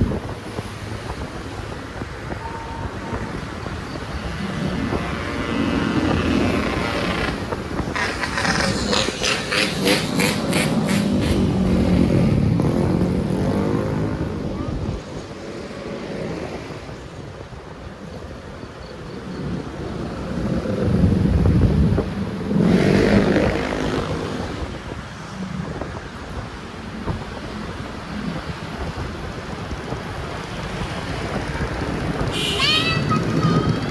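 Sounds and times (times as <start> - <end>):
road traffic engine noise: 0.0 - 33.9
engine revving up: 4.7 - 14.5, 22.4 - 24.6.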